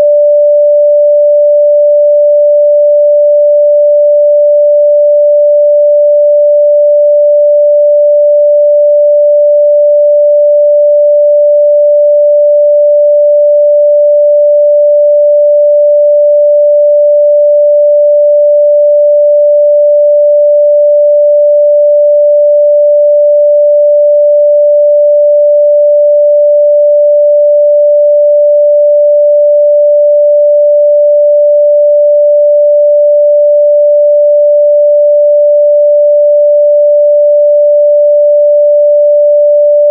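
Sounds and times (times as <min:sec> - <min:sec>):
sine-wave test tone: 0:00.0 - 0:39.9.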